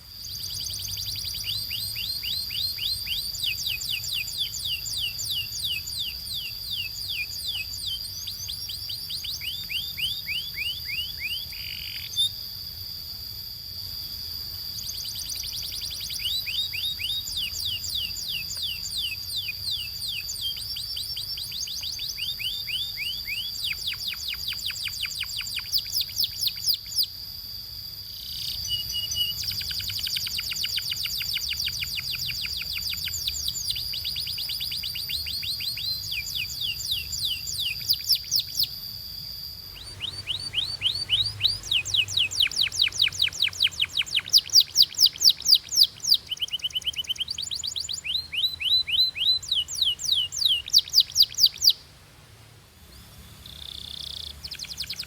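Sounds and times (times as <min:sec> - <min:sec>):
canary singing trills: 0:00.0 - 0:27.4, 0:28.0 - 0:51.9, 0:52.9 - 0:55.0.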